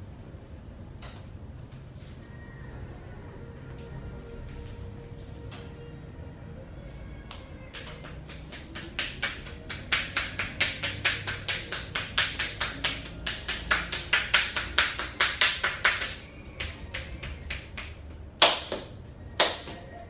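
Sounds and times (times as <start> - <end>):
hands slapping on head: 7.3 - 19.9.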